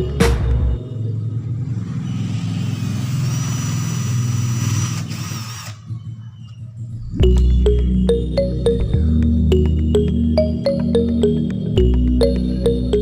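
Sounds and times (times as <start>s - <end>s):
motor winding down: 1.8s - 6.0s
small electric motor running: 2.3s - 5.9s.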